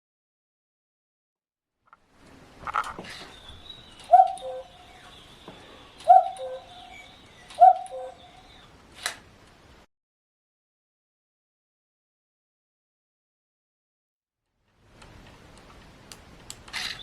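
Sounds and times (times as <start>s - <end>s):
cuckoo clock call: 3.1s - 8.7s.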